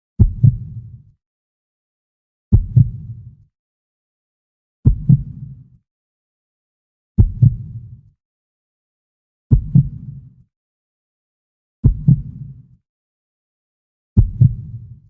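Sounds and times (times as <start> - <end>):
heartbeat double thumps: 0.2 - 0.8, 2.5 - 3.2, 4.8 - 5.4, 7.2 - 7.8, 9.5 - 10.0, 11.8 - 12.4, 14.2 - 14.8.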